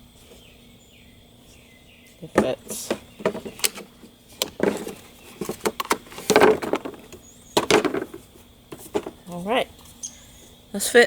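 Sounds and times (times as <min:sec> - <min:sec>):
wood piece knocking and clattering: 0:02.3 - 0:09.2
heavy thuds: 0:02.3 - 0:09.3.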